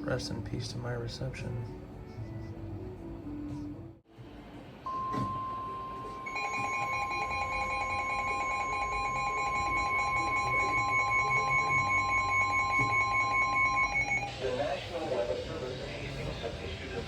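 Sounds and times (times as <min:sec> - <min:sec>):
piercing alarm tone: 0:05.1 - 0:14.5
higher pulsing alarm tone: 0:05.4 - 0:14.5.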